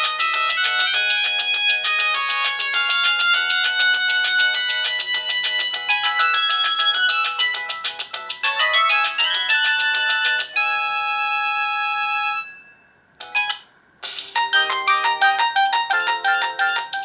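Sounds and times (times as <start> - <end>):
synthesized phone ringtone: 0.0 - 13.6, 14.4 - 17.0.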